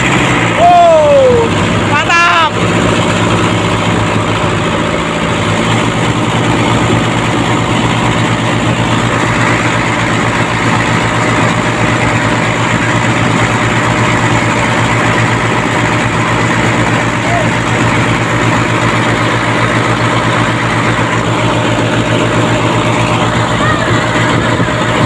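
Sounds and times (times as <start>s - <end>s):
diesel engine idling: 0.0s - 25.0s.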